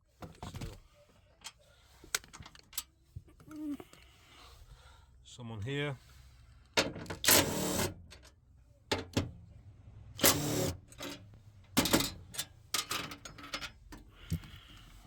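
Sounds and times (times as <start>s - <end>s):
power tool whirring: 7.3s - 7.9s, 10.2s - 10.8s.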